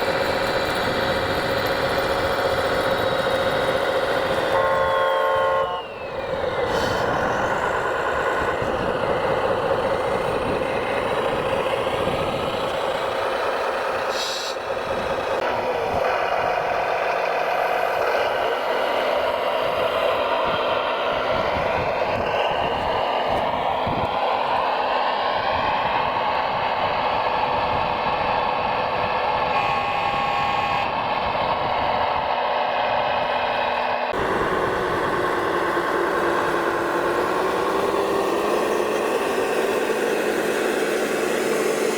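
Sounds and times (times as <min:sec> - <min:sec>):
electric motors whining and rattling: 0:00.0 - 0:41.9
air brake hisses: 0:06.6 - 0:07.3, 0:14.1 - 0:14.6.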